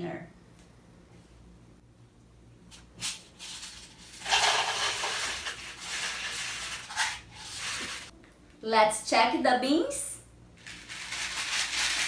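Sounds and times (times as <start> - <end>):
dry beans pouring into container: 4.0 - 8.1, 10.6 - 12.0.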